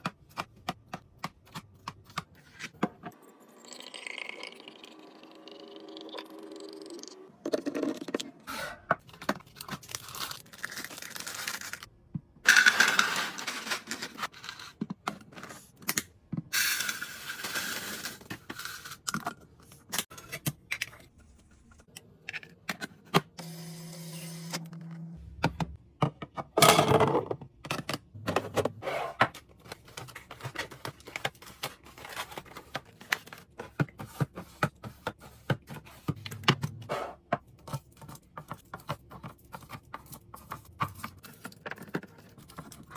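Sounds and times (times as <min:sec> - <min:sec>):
packaging tearing and crinkling: 0:09.5 - 0:11.9.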